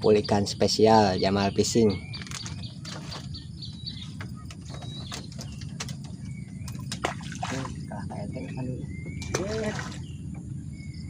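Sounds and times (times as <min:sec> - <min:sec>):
low wind rumble on microphone: 0:00.0 - 0:11.0
small clicks and knocks: 0:02.1 - 0:03.3, 0:04.0 - 0:07.1.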